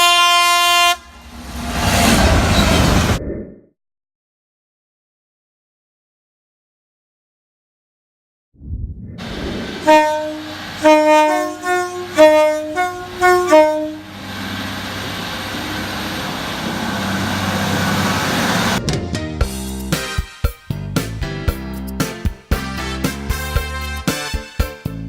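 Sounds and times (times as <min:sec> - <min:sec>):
train horn blasts: 0:00.0 - 0:02.2, 0:09.8 - 0:14.2
train passing: 0:00.4 - 0:03.2, 0:09.2 - 0:18.9
low rumble: 0:01.2 - 0:03.7, 0:08.6 - 0:09.9
music: 0:18.8 - 0:25.0.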